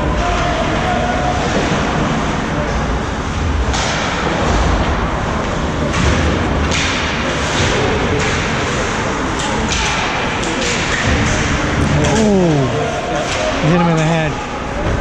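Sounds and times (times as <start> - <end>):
rumbling rink din: 0.0 - 15.0
pucks and sticks knocking: 3.6 - 14.2.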